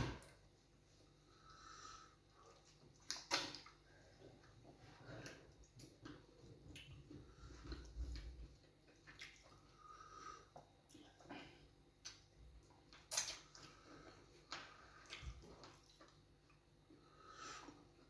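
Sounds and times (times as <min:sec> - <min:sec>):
wet eating smacks and squelches: 0:02.3 - 0:09.8, 0:10.5 - 0:17.0.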